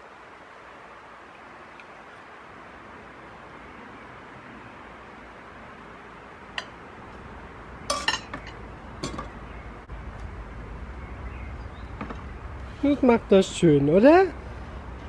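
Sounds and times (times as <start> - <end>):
steady hiss: 0.0 - 8.6
dishes and cutlery clinking: 7.9 - 9.4.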